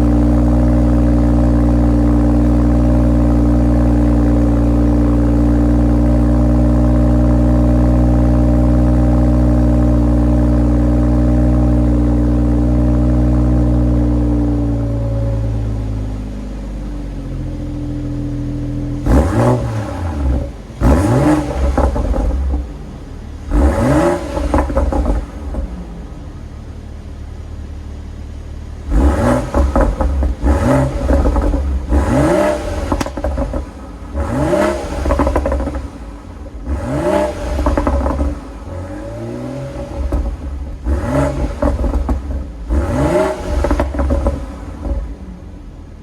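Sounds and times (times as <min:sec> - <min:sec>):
car engine idling and revving: 0:00.0 - 0:46.0.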